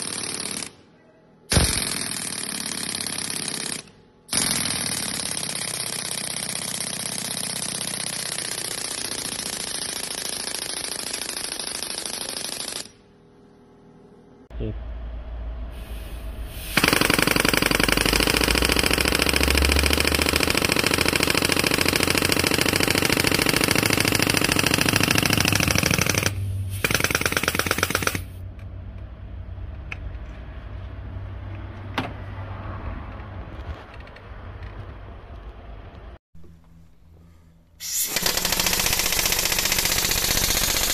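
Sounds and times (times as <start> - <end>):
air hammer hammering rapidly: 1.5 - 12.9, 16.6 - 28.4, 37.8 - 40.9.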